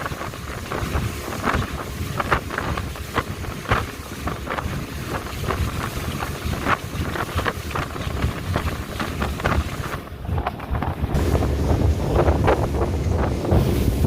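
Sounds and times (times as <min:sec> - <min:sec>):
boat engine rumble: 0:00.0 - 0:14.0
rushing water: 0:00.0 - 0:14.0
wind buffeting microphone: 0:00.0 - 0:14.0.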